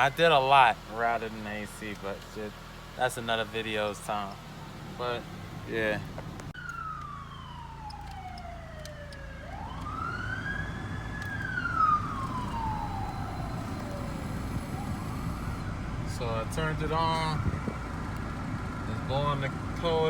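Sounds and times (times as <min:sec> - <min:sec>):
vehicle engine rumble: 0:00.0 - 0:20.0
siren wailing: 0:06.6 - 0:18.0.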